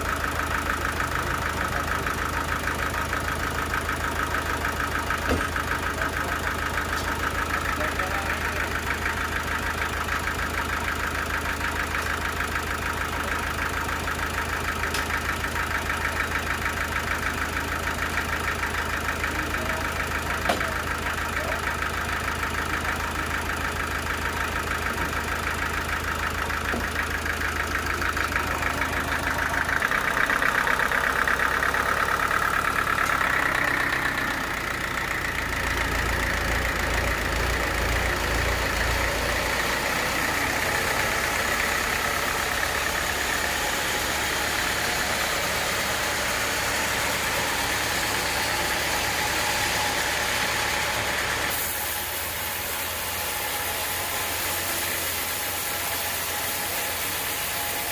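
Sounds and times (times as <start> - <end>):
sawmill saw cutting log: 27.8 - 57.9.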